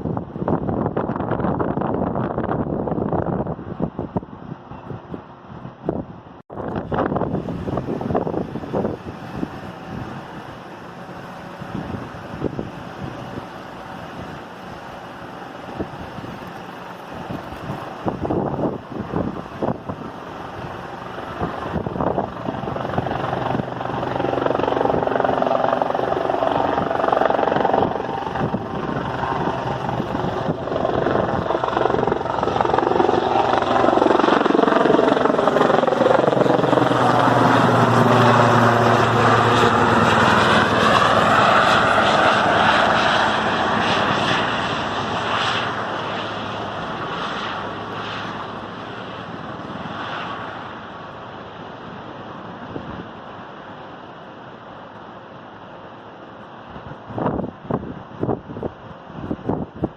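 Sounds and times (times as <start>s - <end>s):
aircraft flying low overhead: 0.0s - 59.9s.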